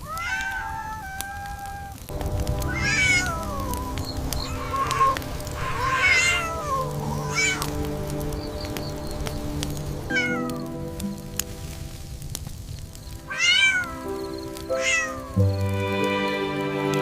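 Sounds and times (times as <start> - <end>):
cat meowing: 0.0 - 7.7, 10.1 - 10.6, 13.3 - 15.4
soft background music: 2.1 - 17.0.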